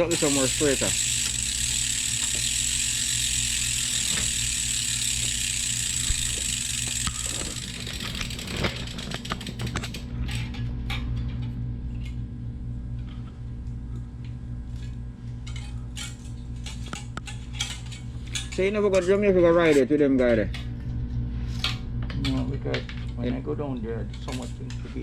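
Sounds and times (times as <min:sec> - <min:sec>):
bicycle freewheel ratchet buzzing: 0:00.0 - 0:11.0, 0:14.8 - 0:20.7.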